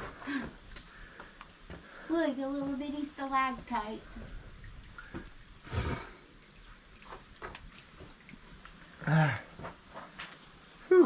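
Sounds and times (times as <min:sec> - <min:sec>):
water dripping: 0:00.1 - 0:10.8
person grunting: 0:09.0 - 0:09.4.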